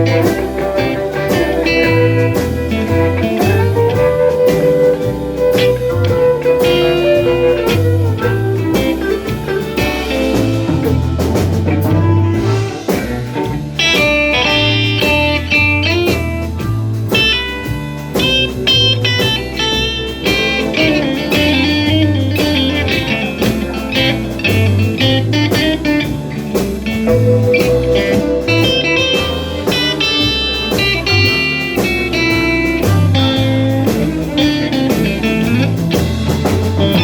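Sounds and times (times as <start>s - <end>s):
bass notes: 0.0s - 37.0s
drums: 0.0s - 37.0s
electric guitar lead: 0.0s - 37.0s.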